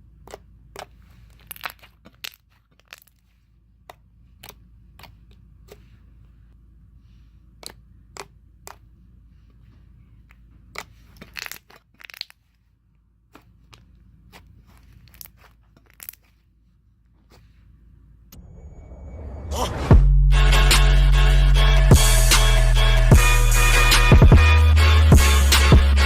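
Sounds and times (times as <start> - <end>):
low hum: 18.2 - 26.0.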